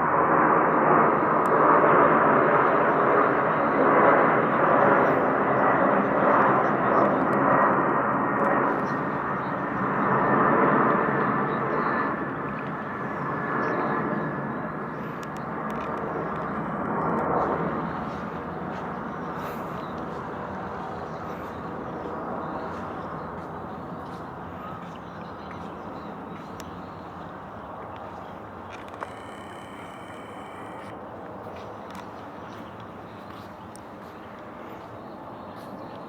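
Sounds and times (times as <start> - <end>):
distant engine rushing: 8.8 - 34.8
faint high whine: 26.1 - 31.9.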